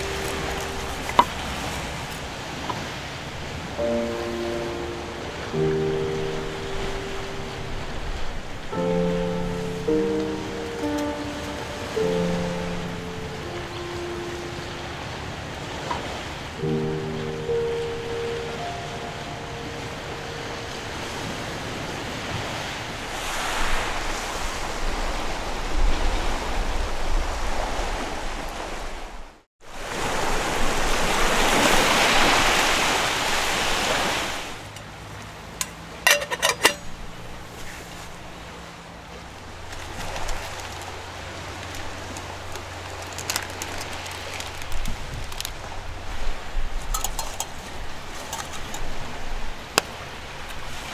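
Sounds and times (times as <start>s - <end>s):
sea waves washing onto shore: 0.0s - 50.9s.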